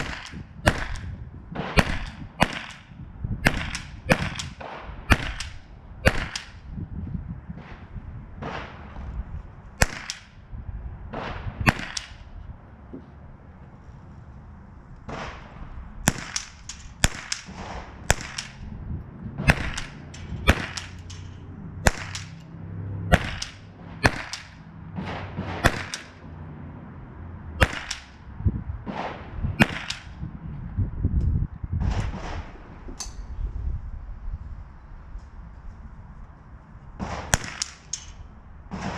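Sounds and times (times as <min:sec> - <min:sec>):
rifle shots: 0:00.0 - 0:06.6, 0:07.6 - 0:09.0, 0:09.8 - 0:10.4, 0:11.1 - 0:12.3, 0:15.1 - 0:18.7, 0:19.4 - 0:22.4, 0:23.1 - 0:26.2, 0:27.6 - 0:28.2, 0:28.8 - 0:30.2, 0:31.9 - 0:32.6, 0:37.0 - 0:38.1, 0:38.7 - 0:38.9.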